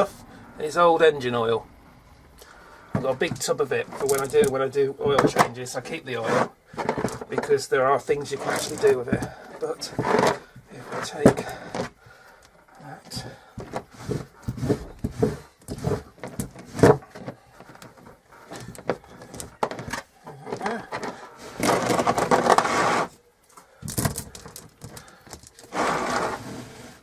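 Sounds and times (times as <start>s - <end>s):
chain scraping and rubbing: 3.0s - 23.2s, 23.8s - 27.0s
metal chain clinks and knocks: 23.8s - 25.6s.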